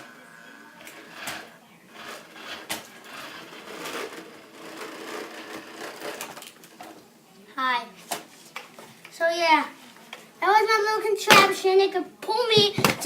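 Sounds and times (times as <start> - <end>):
toy car electric motor: 0.0 - 6.8
sharp knocks and clatter: 12.5 - 13.0.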